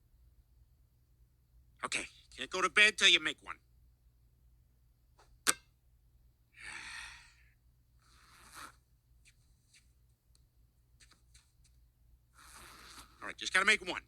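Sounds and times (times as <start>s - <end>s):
sharp click: 5.2s - 5.7s
faint light ticks: 9.3s - 11.8s.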